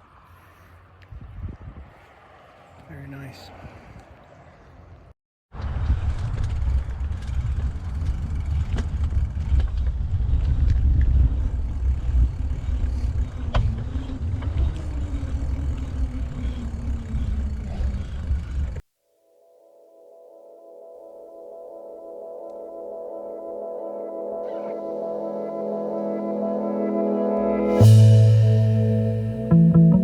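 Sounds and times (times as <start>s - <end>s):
wind rumbling on microphone: 1.0s - 2.3s, 5.6s - 18.8s
bike clicks and rattles: 6.0s - 17.6s.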